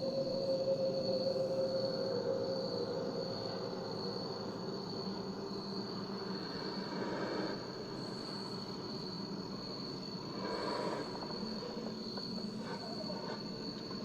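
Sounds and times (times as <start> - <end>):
high-pitched whine: 0.0 - 6.9
background hiss and hum: 0.0 - 14.0.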